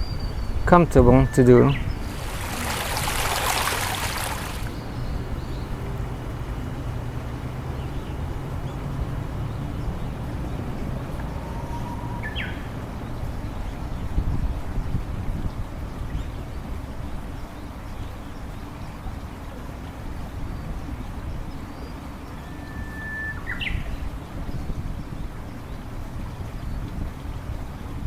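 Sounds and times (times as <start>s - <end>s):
bird chirp: 0.0s - 14.2s
rush of noise: 1.8s - 13.6s
steady low hum: 4.0s - 13.4s.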